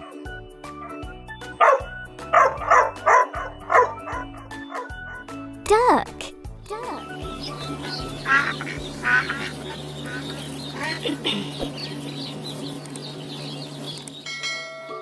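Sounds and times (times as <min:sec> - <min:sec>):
duck quacking: 0:06.8 - 0:14.0.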